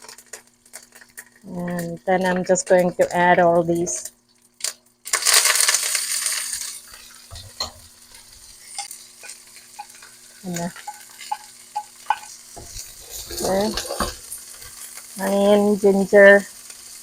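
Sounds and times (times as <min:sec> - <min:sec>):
food sizzling in hot oil: 0:00.0 - 0:17.0
spoon tapping and scraping pan: 0:06.9 - 0:14.8.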